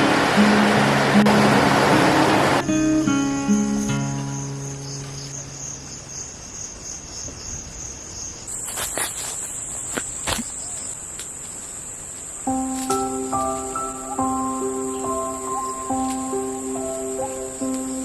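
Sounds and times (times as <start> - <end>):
high-pitched insect note: 0.0 - 6.3, 12.4 - 18.0
insects chirring: 0.0 - 18.0.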